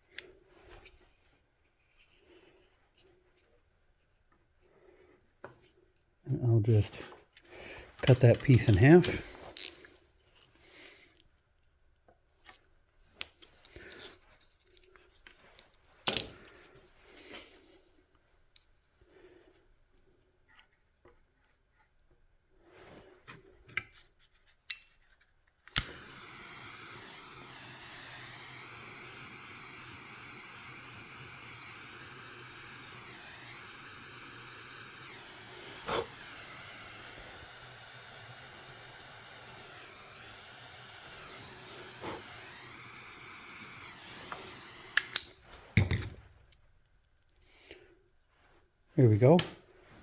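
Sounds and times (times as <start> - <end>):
heat gun blowing hiss: 7.8 - 9.9, 25.7 - 45.8
heat gun switch click: 25.7 - 26.2, 44.3 - 45.3.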